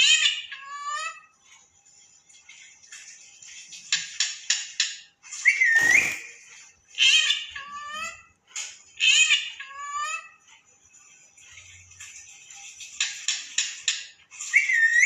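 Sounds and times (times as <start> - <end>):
parrot whistling and calling: 5.4 - 6.4, 14.4 - 15.0.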